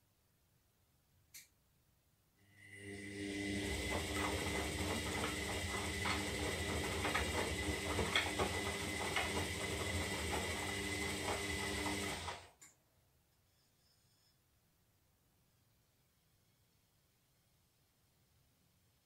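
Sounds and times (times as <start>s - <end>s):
washing machine motor whine: 2.5s - 12.6s
tumbling load clicks and knocks: 3.8s - 12.1s.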